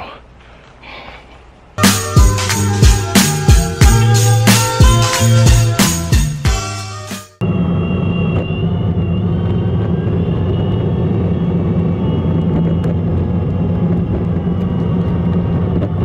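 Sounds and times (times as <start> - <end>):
faint high whine: 7.4 - 16.0.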